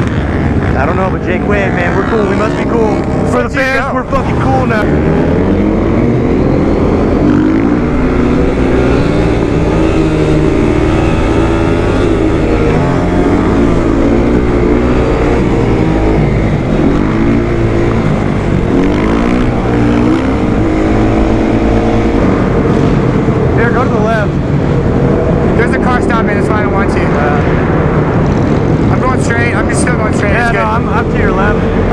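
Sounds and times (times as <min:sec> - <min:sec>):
motorcycle engine revving: 0:00.0 - 0:31.9.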